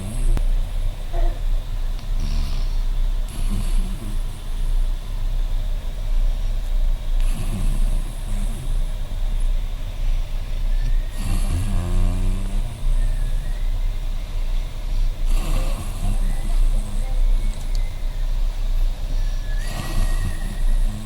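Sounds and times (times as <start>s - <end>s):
woman snoring loudly: 0.0s - 0.4s, 3.3s - 4.7s, 7.2s - 8.9s, 11.1s - 13.3s, 15.3s - 17.2s, 19.6s - 21.0s
steady low hum: 0.0s - 21.0s.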